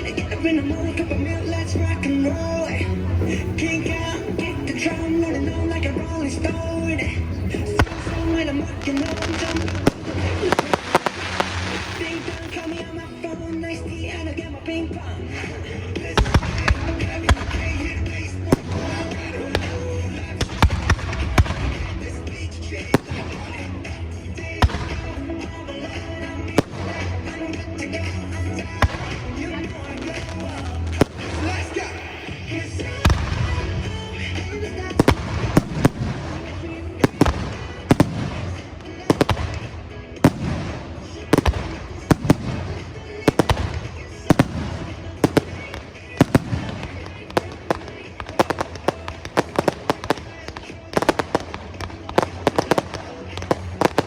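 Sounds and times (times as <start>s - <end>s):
firework shells bursting: 0.0s - 13.9s
fireworks bangs: 0.0s - 54.0s
low rumble of echoing reports: 0.0s - 54.0s
pop music with heavy bass: 0.0s - 54.0s.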